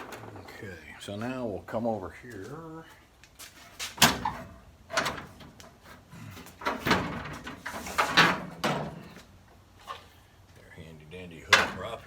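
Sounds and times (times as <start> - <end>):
metal hood knocks and clunks: 3.9 - 5.9, 6.5 - 9.3, 11.5 - 12.0.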